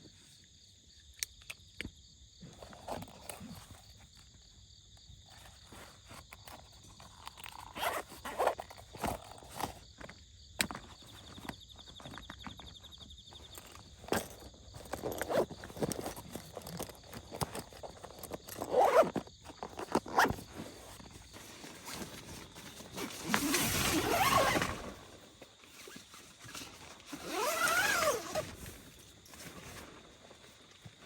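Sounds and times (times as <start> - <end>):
handling clicks and rustles: 5.3 - 31.0
zipper pulled: 5.7 - 9.8, 14.1 - 21.0, 21.8 - 28.8.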